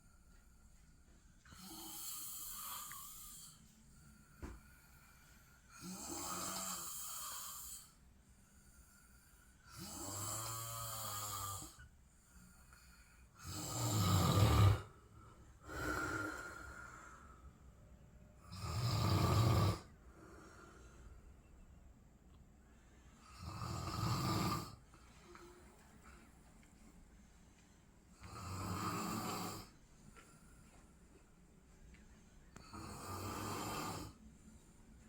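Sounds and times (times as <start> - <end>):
man snoring: 1.5 - 3.6, 5.7 - 8.0, 9.6 - 11.8, 13.4 - 14.9, 15.6 - 16.9, 18.4 - 19.9, 23.2 - 24.8, 28.2 - 29.7, 32.6 - 34.2.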